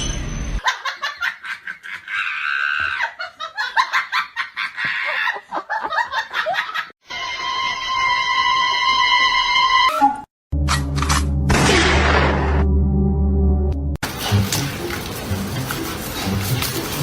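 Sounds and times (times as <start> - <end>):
high-pitched laughter: 0.6 - 6.9.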